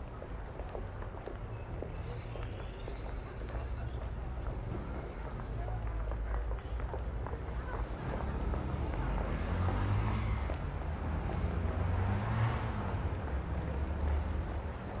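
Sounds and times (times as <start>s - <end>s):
traffic rumble: 0.0s - 15.0s
vehicle passing close: 8.1s - 14.8s.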